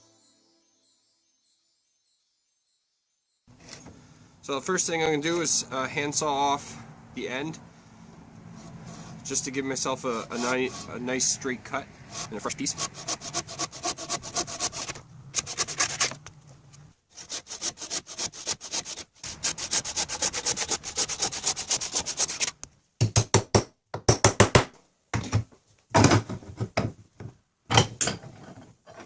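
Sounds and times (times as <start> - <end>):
hand saw cutting wood: 8.5 - 11.4, 12.0 - 16.2, 17.1 - 22.6.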